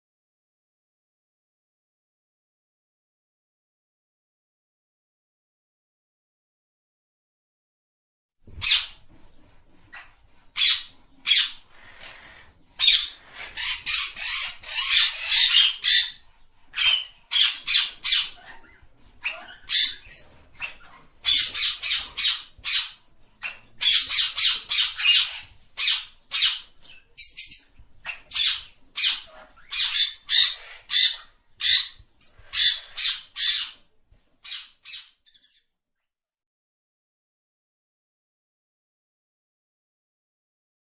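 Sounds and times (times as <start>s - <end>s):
parrot harsh calls: 9.9s - 16.2s, 16.8s - 33.8s.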